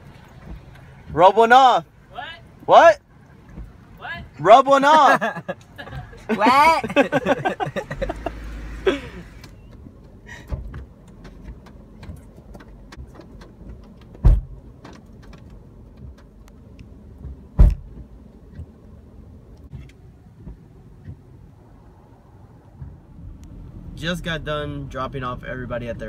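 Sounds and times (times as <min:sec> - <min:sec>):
small clicks and rattles: 0:09.4 - 0:16.9
car door slamming: 0:10.4 - 0:16.2, 0:17.2 - 0:18.8.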